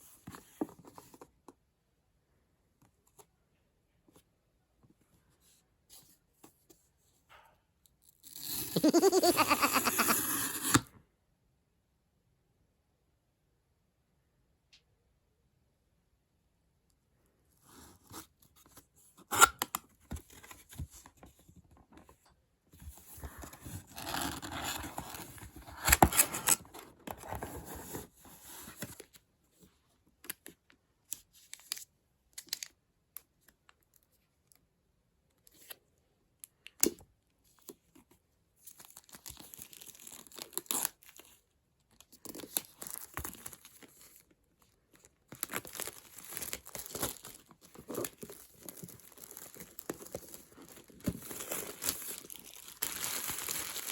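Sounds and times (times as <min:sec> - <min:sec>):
packaging tearing and crinkling: 0:38.8 - 0:41.3, 0:45.3 - 0:53.9.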